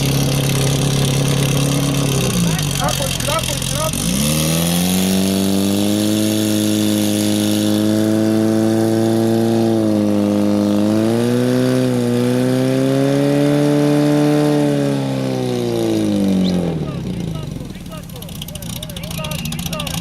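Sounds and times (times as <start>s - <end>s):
fire pump engine running: 0.0s - 20.0s.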